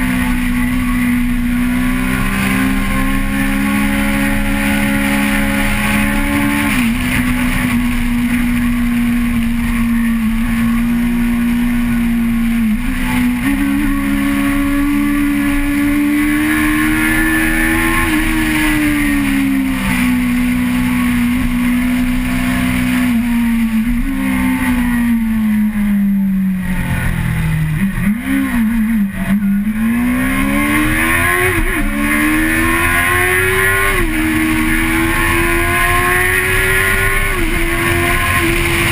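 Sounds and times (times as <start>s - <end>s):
car engine revving: 0.0s - 38.9s.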